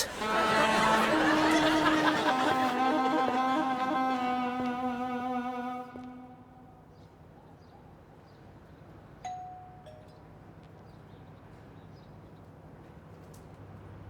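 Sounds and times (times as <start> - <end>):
string music: 0.0 - 6.8
two-note doorbell chime: 9.2 - 10.2.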